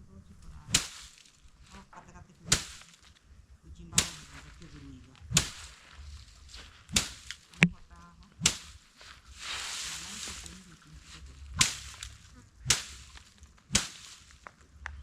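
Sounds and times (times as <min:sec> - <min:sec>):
stick striking sharp whacks: 0:00.7 - 0:01.2, 0:02.4 - 0:03.1, 0:03.9 - 0:04.6, 0:05.2 - 0:05.8, 0:06.6 - 0:07.8, 0:08.4 - 0:08.9, 0:09.5 - 0:14.5.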